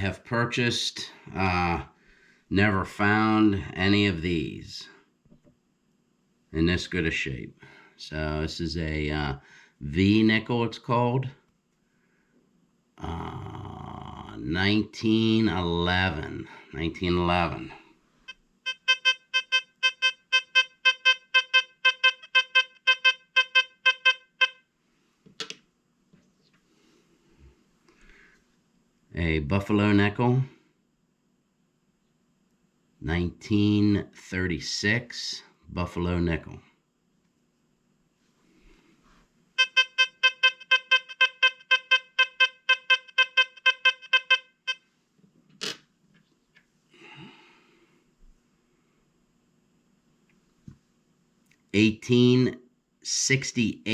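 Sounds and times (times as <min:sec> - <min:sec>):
metal detector short beeps: 0:18.7 - 0:24.6, 0:39.6 - 0:44.8.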